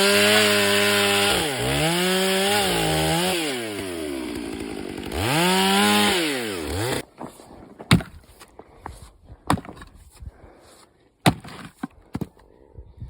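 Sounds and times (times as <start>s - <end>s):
chainsaw revving: 0.0s - 7.0s.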